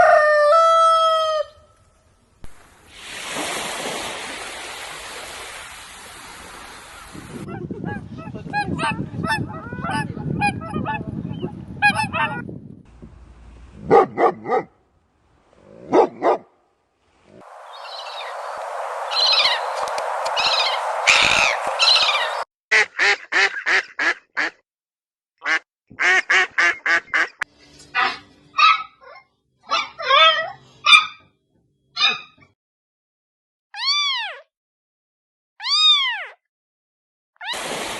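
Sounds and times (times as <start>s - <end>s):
birds calling: 17.5s - 22.4s.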